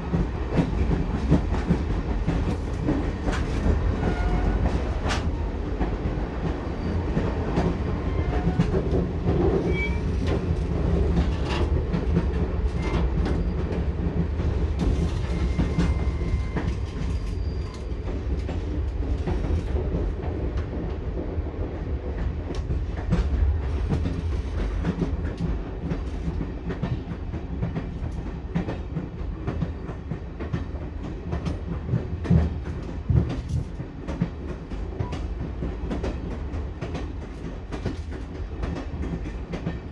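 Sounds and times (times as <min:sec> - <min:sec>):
train carriage rumble: 0:00.0 - 0:39.9.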